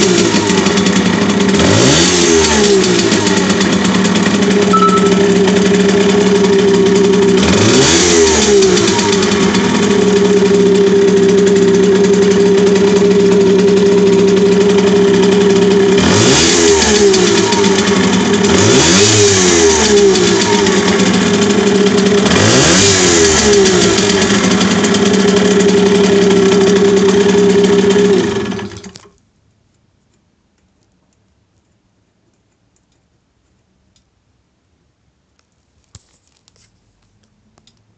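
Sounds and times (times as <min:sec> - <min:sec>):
moped engine idling and revving: 0:00.0 - 0:29.1.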